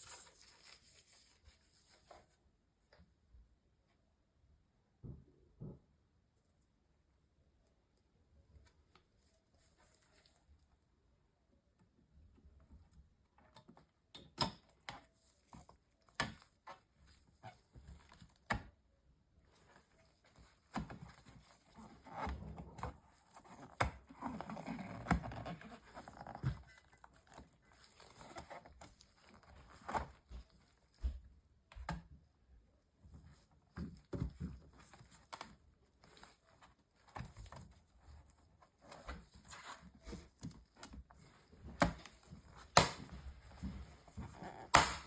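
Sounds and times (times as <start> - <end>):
plastic rustling and crinkling: 0.0 - 2.4, 19.4 - 31.3, 33.1 - 45.0.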